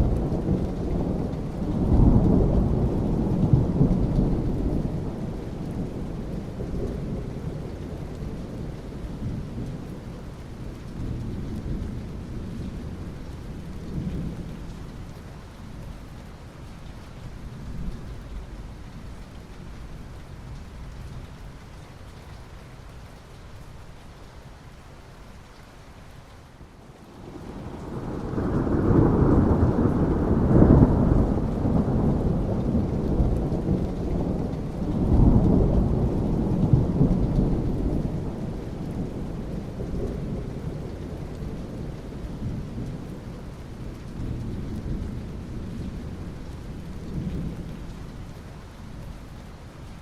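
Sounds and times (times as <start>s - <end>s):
rolling thunder: 0.0s - 10.0s, 27.2s - 48.2s
steady rain: 0.0s - 50.0s.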